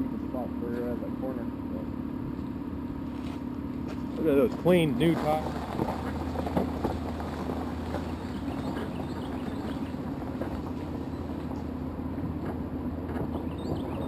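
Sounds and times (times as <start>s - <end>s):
car engine humming: 0.0s - 14.0s.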